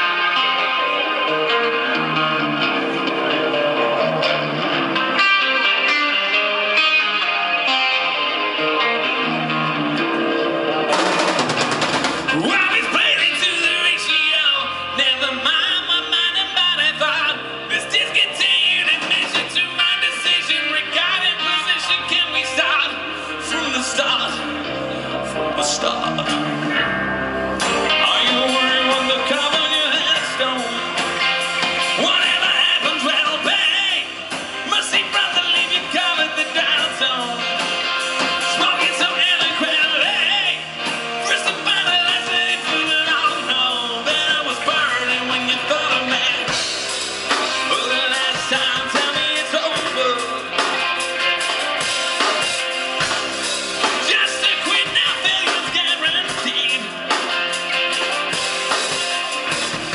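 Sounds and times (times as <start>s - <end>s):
drums: 0.0s - 59.9s
electric guitar: 0.0s - 59.9s
person singing: 12.3s - 27.0s, 27.6s - 46.7s, 47.3s - 52.6s, 53.8s - 59.9s.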